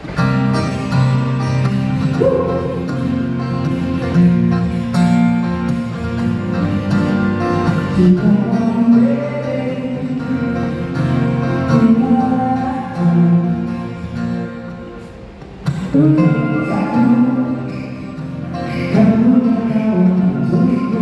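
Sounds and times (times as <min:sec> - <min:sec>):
person singing: 0:02.0 - 0:02.9, 0:07.8 - 0:14.0, 0:15.9 - 0:21.0.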